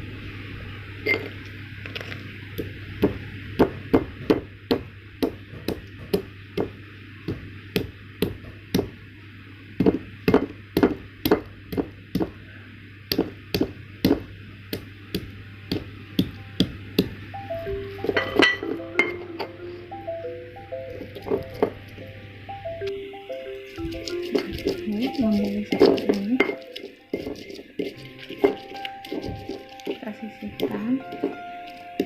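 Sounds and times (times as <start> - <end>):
pestle pounding in a mortar: 2.6 - 9.0, 9.8 - 12.4, 13.1 - 17.2, 23.6 - 32.0.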